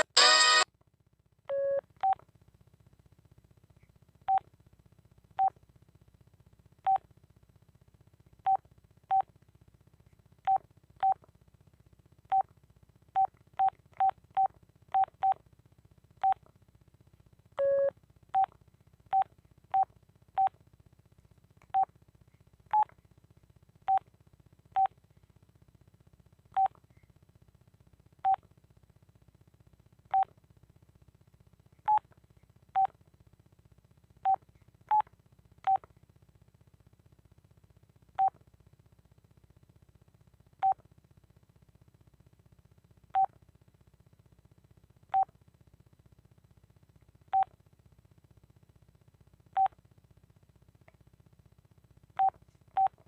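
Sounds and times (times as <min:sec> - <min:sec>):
longer low phone tone: 0:00.0 - 0:00.6
phone keypad beeps: 0:00.0 - 0:00.6.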